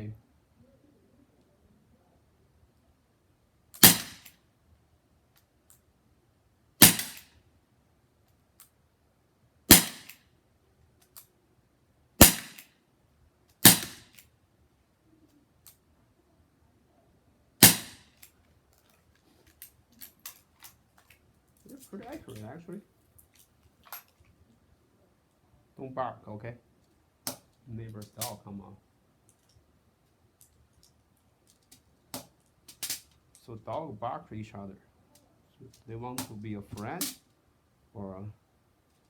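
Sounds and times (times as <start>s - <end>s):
air revolver shots cracking: 3.8s - 4.3s, 6.8s - 7.3s, 9.7s - 10.2s, 12.2s - 12.7s, 13.6s - 14.2s, 17.6s - 18.1s.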